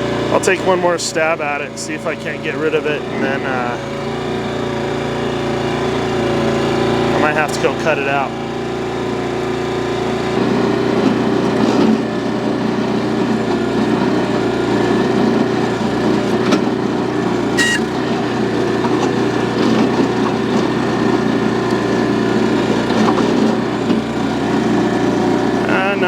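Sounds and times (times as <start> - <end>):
small gasoline engine running: 0.0 - 26.0
high squeak: 17.6 - 18.1.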